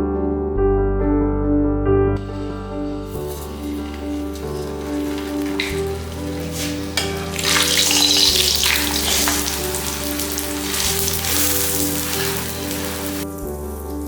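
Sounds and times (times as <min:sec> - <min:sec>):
soft background music: 0:00.0 - 0:14.0
flatbread sizzling in oil: 0:03.1 - 0:14.0.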